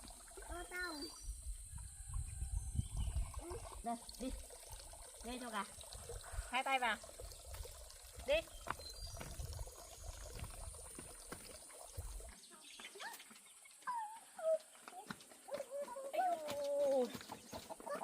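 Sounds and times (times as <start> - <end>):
chickens calling: 13.1 - 18.0.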